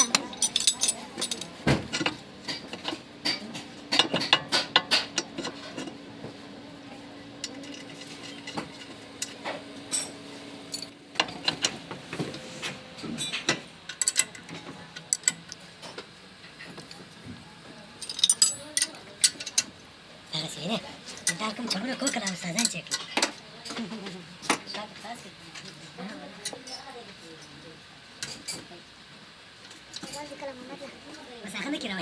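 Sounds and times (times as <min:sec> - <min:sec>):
metal tools clinking: 0:00.0 - 0:03.0, 0:07.4 - 0:11.7, 0:13.2 - 0:15.4, 0:18.0 - 0:19.7.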